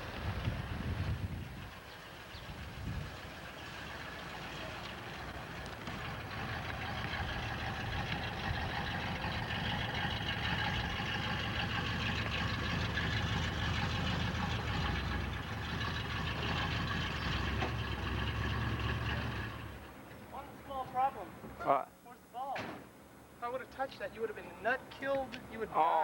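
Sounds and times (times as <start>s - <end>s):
road or wind noise hiss: 0.0s - 11.8s
vehicle engine low rumble: 0.0s - 21.6s.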